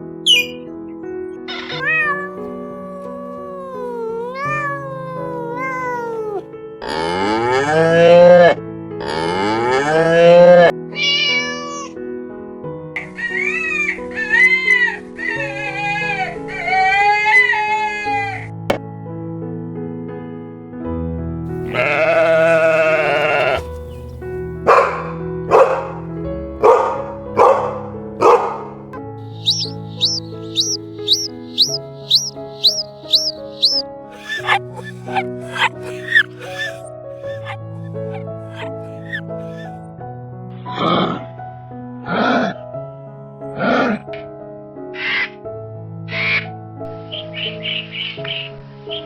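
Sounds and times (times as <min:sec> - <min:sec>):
background music: 0:00.0 - 0:19.3, 0:21.5 - 0:49.0
sharp bark-like calls: 0:00.2 - 0:00.6, 0:24.7 - 0:26.0, 0:26.6 - 0:28.7, 0:29.3 - 0:39.7
cat meowing: 0:01.5 - 0:06.4, 0:10.9 - 0:11.9, 0:21.7 - 0:23.7, 0:29.4 - 0:39.7
cow mooing: 0:06.8 - 0:10.7, 0:21.6 - 0:23.7, 0:29.4 - 0:39.2
wavering bleat: 0:21.6 - 0:23.8, 0:29.4 - 0:39.7.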